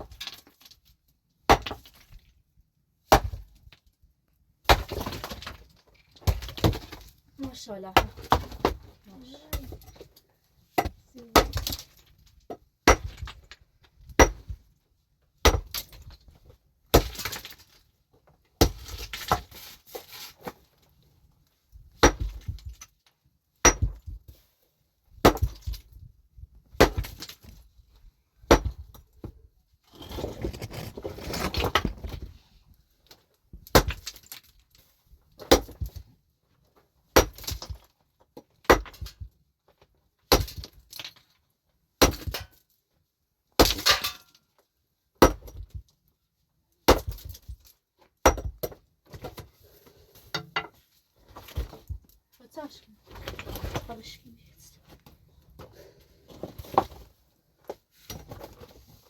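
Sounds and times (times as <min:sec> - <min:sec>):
pickaxe striking rock: 0:01.5 - 0:01.9, 0:03.1 - 0:03.5, 0:04.7 - 0:05.6, 0:06.2 - 0:07.1, 0:10.8 - 0:11.9, 0:12.8 - 0:13.4, 0:14.2 - 0:14.6, 0:15.4 - 0:16.1, 0:16.9 - 0:17.6, 0:18.6 - 0:19.6, 0:22.0 - 0:22.8, 0:23.6 - 0:24.2, 0:25.2 - 0:25.8, 0:26.7 - 0:27.4, 0:28.5 - 0:29.0, 0:33.7 - 0:34.2, 0:35.4 - 0:35.9, 0:37.2 - 0:37.8, 0:38.6 - 0:39.2, 0:40.3 - 0:40.8, 0:42.0 - 0:42.6, 0:43.6 - 0:44.3, 0:45.2 - 0:45.7, 0:46.9 - 0:47.5, 0:48.2 - 0:49.4
stones scraping and tumbling: 0:04.7 - 0:14.3, 0:18.6 - 0:21.2, 0:28.7 - 0:36.1, 0:48.4 - 0:52.2, 0:52.9 - 0:59.0
broken stone clattering: 0:29.9 - 0:32.2.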